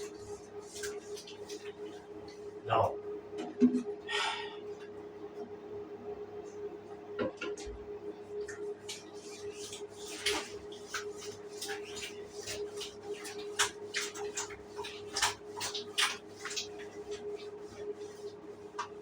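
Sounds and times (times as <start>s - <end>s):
shower water splashing: 0.0s - 2.5s, 8.7s - 19.0s.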